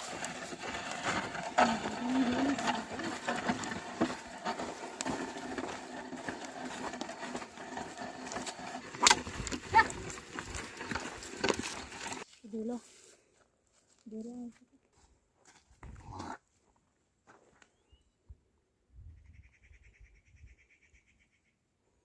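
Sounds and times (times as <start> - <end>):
plough knocking and scraping: 0.0 - 12.2.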